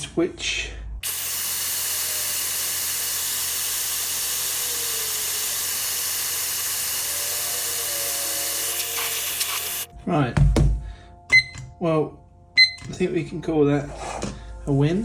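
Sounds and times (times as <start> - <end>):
hair dryer running: 1.0 - 9.9.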